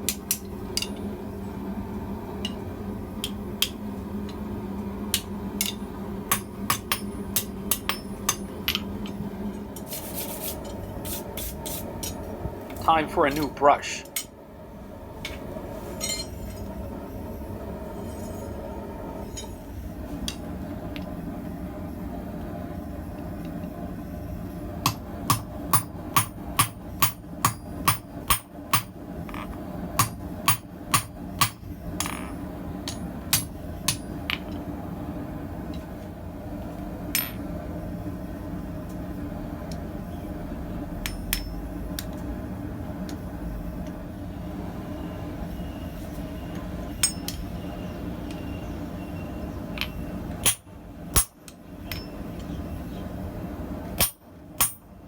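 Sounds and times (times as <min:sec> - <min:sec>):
low background hum: 0:00.0 - 0:55.0
hammer striking steel on anvil: 0:05.1 - 0:08.8, 0:16.0 - 0:16.4, 0:24.8 - 0:28.9, 0:30.0 - 0:32.3, 0:32.9 - 0:34.5, 0:41.0 - 0:41.6, 0:47.0 - 0:47.4, 0:50.4 - 0:52.2, 0:54.0 - 0:54.9.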